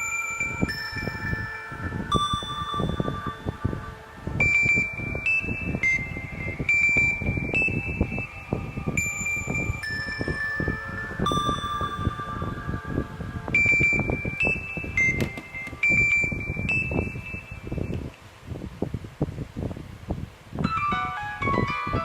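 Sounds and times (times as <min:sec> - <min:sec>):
phone ringtone chiming melody: 0:00.0 - 0:18.1, 0:20.6 - 0:22.0.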